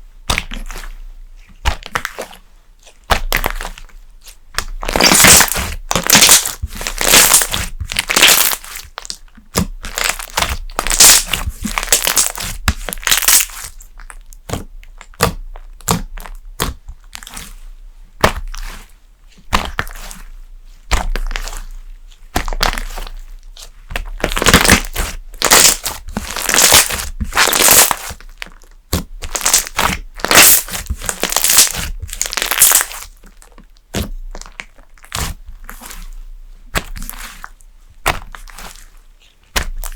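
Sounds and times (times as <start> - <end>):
slime crackling and popping: 3.0 - 17.4, 22.3 - 36.0, 36.7 - 39.9.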